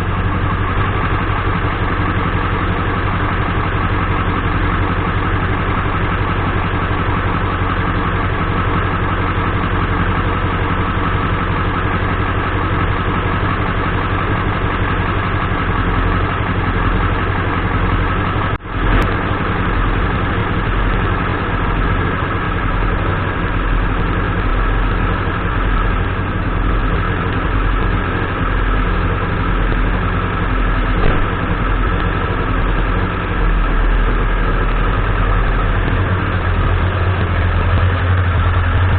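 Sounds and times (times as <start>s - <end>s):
diesel engine idling: 0.0s - 38.9s.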